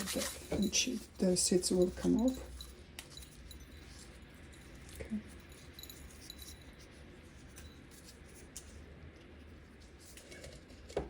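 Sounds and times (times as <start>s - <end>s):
dried chillies crackling and rustling: 0.0s - 2.2s
steady low hum: 0.0s - 11.0s.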